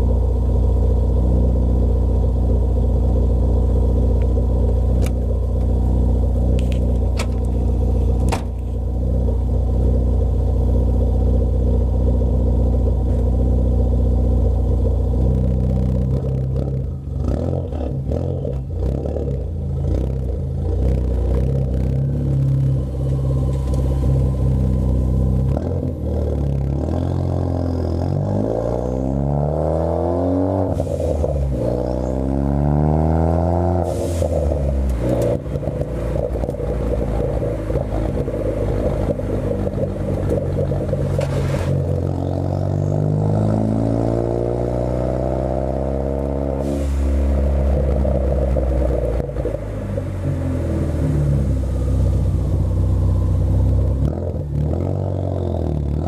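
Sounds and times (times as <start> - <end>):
car engine accelerating through gears: 0.0 - 56.0
sharp exhaust pops: 34.0 - 42.2.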